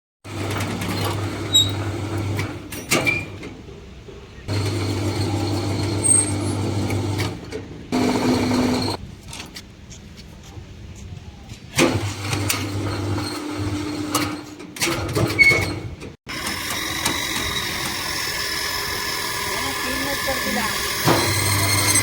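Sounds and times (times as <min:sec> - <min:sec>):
machine humming: 0:04.5 - 0:09.0, 0:16.3 - 0:22.0.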